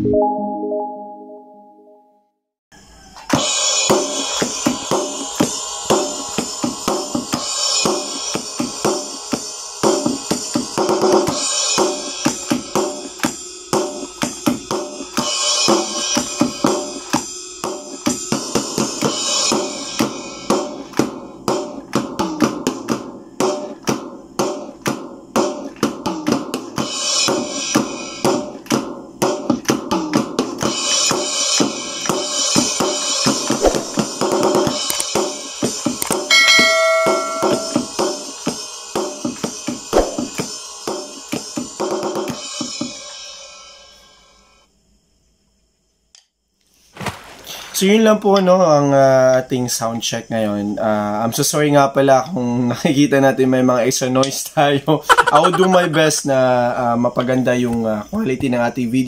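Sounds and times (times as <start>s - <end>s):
electronic drum beat: 36.6s - 42.9s, 55.1s - 56.2s.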